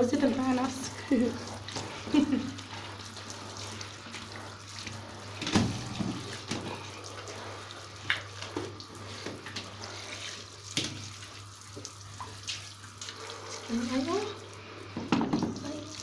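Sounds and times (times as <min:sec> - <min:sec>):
tap water running: 0:00.0 - 0:16.0
knocks against sink basin: 0:15.0 - 0:15.6.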